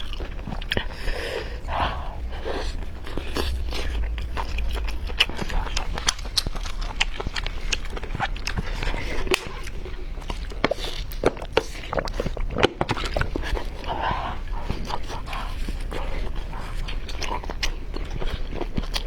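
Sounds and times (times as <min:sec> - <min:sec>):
person chewing and biting: 0:00.0 - 0:13.8.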